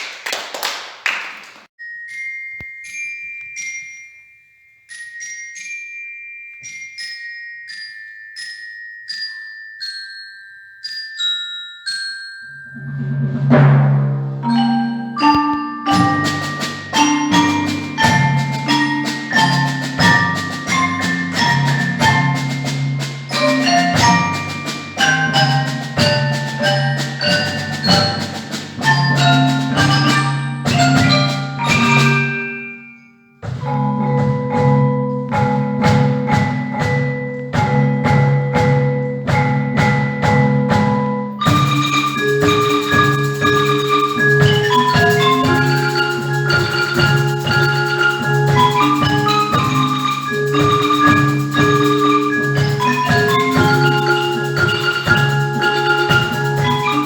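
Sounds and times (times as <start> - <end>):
marimba fast runs: 14.4 - 32.4, 33.5 - 57.0.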